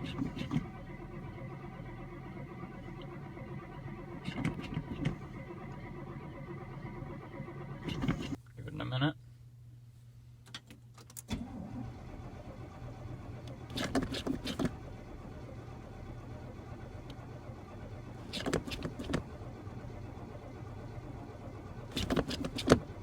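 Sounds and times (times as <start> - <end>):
engine clattering: 0.0 - 8.4, 11.4 - 23.0
engine cranking by starter: 0.0 - 8.4, 11.2 - 23.0
starter clicks: 18.2 - 19.2.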